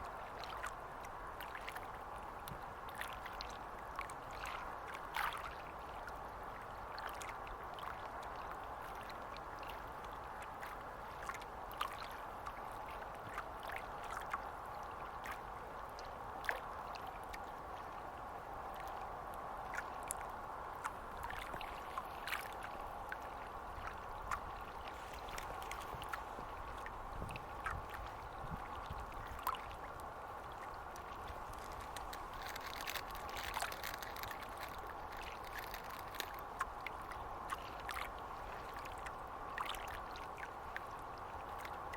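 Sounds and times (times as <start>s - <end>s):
small waves lapping: 0.0s - 41.9s
little water splashes: 20.8s - 40.9s.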